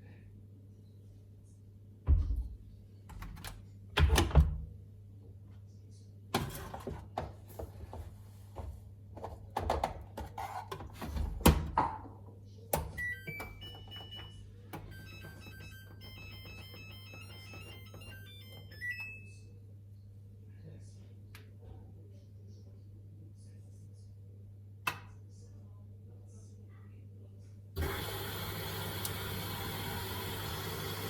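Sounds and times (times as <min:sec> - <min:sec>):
washing machine beeping: 0:12.9 - 0:19.4, 0:27.8 - 0:31.0
electronic start-up tune: 0:14.9 - 0:19.0.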